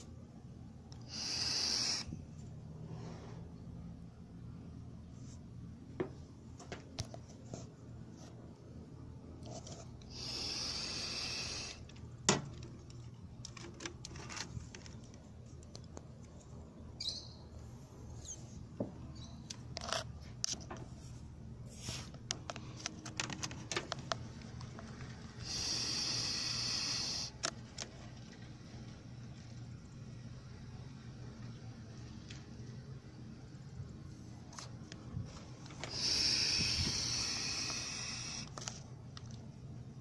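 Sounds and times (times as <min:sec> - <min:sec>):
steady low hum: 0:00.0 - 0:40.0
air hissing: 0:01.0 - 0:02.3, 0:10.1 - 0:11.9, 0:25.4 - 0:27.5, 0:35.3 - 0:38.7
small clicks and knocks: 0:11.9 - 0:16.5.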